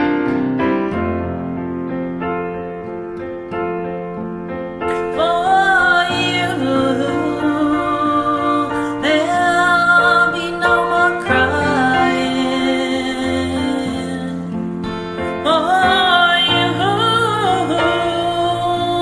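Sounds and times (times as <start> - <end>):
piano and keyboard backing track: 0.0 - 19.0
woman singing a ballad: 4.9 - 19.0.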